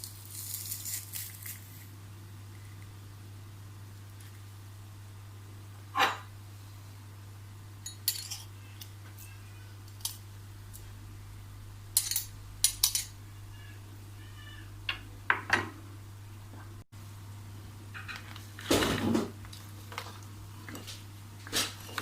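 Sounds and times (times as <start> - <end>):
steady low hum: 0.0 - 22.0
utensils and dishes clinking: 7.8 - 8.9, 12.0 - 13.2.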